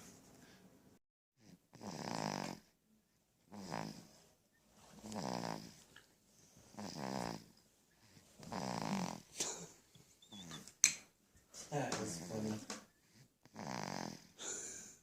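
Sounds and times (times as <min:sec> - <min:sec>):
baby snoring: 0:01.4 - 0:02.7, 0:03.5 - 0:04.2, 0:05.0 - 0:05.8, 0:06.7 - 0:07.6, 0:08.4 - 0:09.3, 0:10.2 - 0:10.6, 0:13.4 - 0:14.9.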